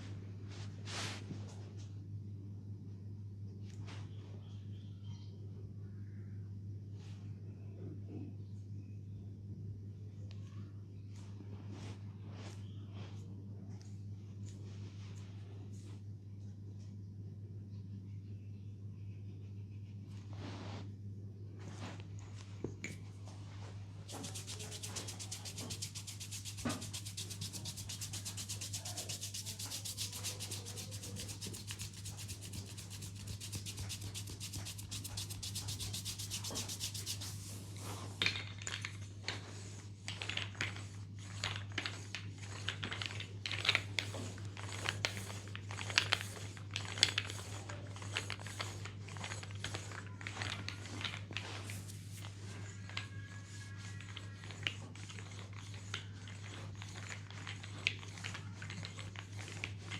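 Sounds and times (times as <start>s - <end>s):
low steady hum: 0.0s - 43.2s
hands tapping and patting: 24.1s - 37.4s
hands rubbing skin: 24.1s - 37.9s, 50.8s - 52.4s.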